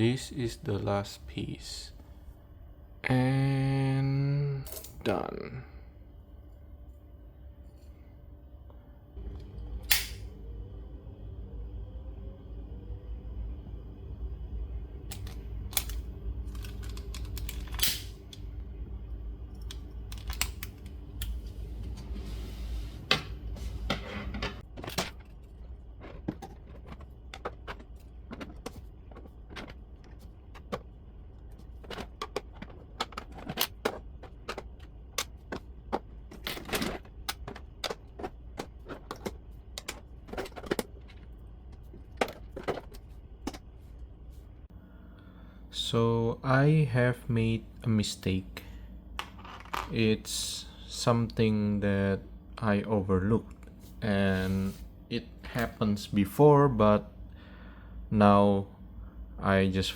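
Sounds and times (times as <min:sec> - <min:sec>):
low steady hum: 0:00.0 - 0:59.9
plastic parts clicking and knocking: 0:15.1 - 0:18.3, 0:24.6 - 0:43.7.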